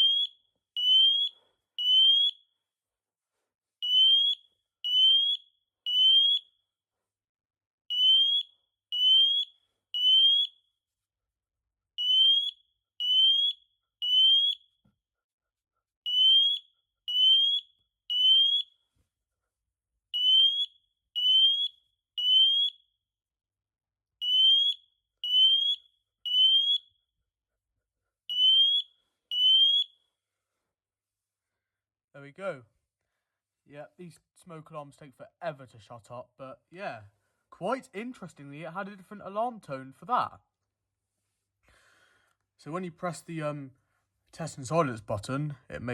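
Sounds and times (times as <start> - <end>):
smoke alarm beeping: 0.0 - 2.4, 3.8 - 6.5, 7.9 - 10.6, 12.0 - 14.6, 16.1 - 18.7, 20.2 - 22.8, 24.2 - 26.9, 28.3 - 30.0.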